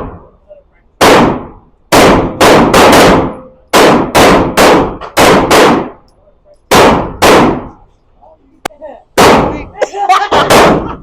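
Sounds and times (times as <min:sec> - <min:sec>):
handgun shots: 0:01.0 - 0:06.0, 0:06.7 - 0:07.8, 0:09.2 - 0:09.6, 0:10.4 - 0:11.0.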